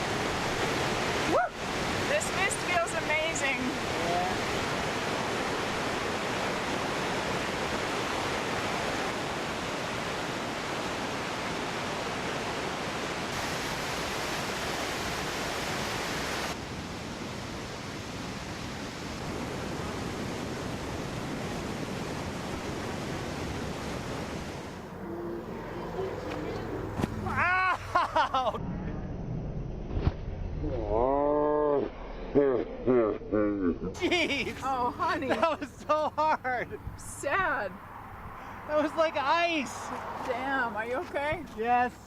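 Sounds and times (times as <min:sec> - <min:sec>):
waterfall roaring: 0:00.0 - 0:25.0.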